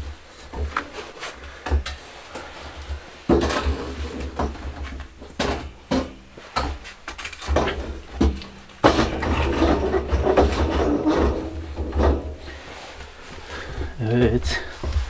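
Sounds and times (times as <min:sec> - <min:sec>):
hard objects knocking and clattering: 0:02.8 - 0:12.6.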